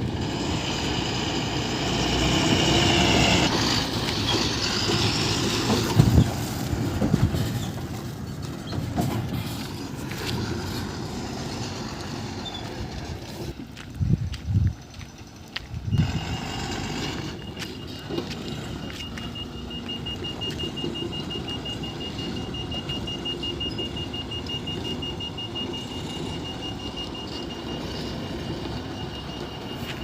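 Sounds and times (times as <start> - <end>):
heavy machinery engine running: 0.0 - 30.0
reversing alarm beeping: 15.9 - 30.0.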